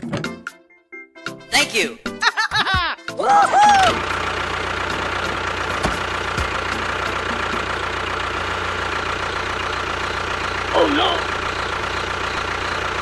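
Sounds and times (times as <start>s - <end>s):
engine idling: 3.5s - 13.0s
high-pitched voice-like sound: 10.7s - 11.4s.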